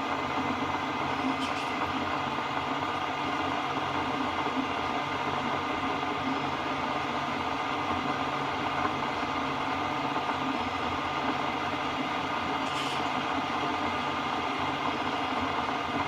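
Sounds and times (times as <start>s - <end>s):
milling machine humming: 0.0s - 16.0s.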